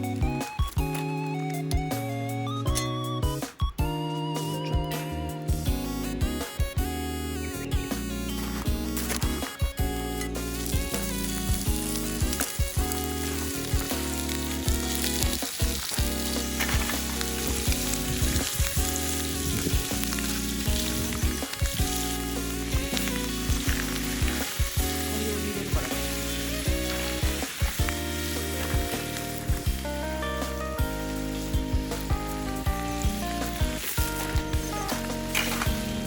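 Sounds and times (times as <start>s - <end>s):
background music: 0.0s - 36.0s
food sizzling in a frying pan: 10.2s - 29.8s, 30.5s - 36.0s.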